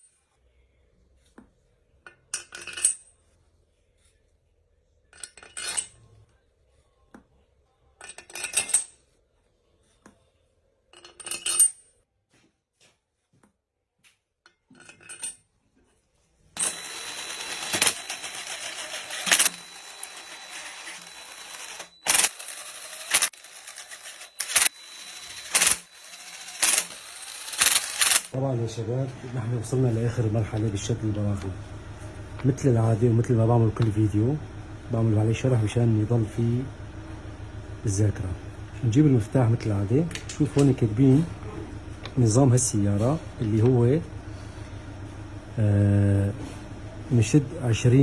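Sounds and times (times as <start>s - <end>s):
metal tools clinking: 8.0s - 9.0s, 10.9s - 11.9s, 14.5s - 15.5s, 16.6s - 28.4s.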